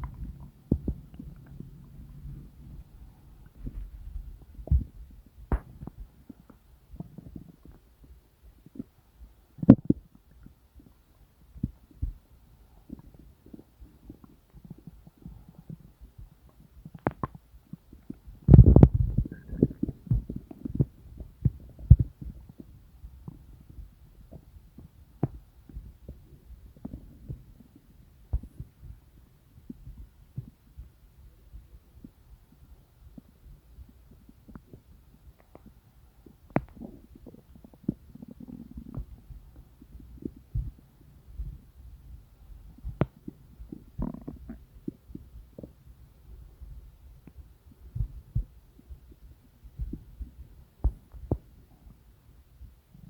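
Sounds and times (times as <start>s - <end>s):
stomach gurgling: 0.0s - 53.0s.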